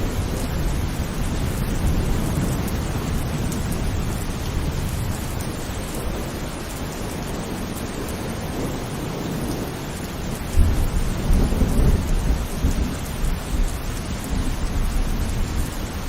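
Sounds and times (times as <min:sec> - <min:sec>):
heavy rain falling: 0:00.0 - 0:16.0
thunder rumbling: 0:00.0 - 0:16.0.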